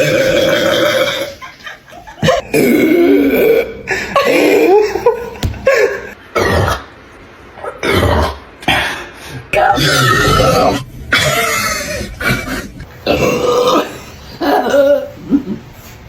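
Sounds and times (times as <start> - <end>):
person burping: 0.0 - 1.4, 2.2 - 6.8, 9.6 - 15.6.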